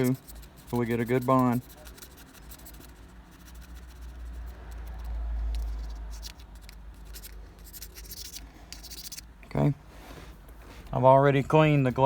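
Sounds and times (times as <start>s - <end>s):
faint scraping and small clicks: 4.5s - 9.2s.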